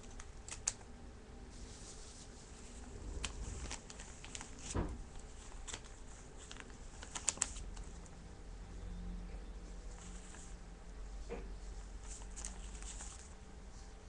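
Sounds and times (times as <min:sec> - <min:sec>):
plastic bag rustling and crinkling: 0:01.6 - 0:08.0, 0:11.9 - 0:13.4
soft thump: 0:04.7 - 0:05.0.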